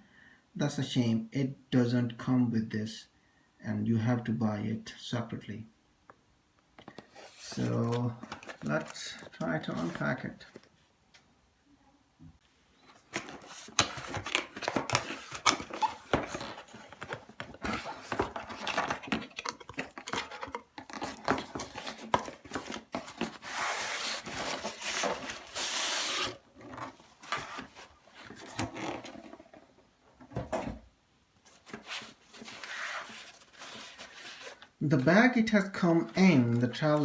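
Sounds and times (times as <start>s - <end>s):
packaging rustling and tearing: 7.1s - 10.7s, 12.9s - 29.4s, 31.5s - 34.7s.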